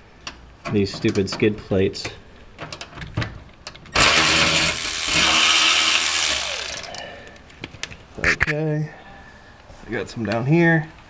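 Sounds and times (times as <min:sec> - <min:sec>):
cordless ratchet motor running: 0:04.0 - 0:07.0.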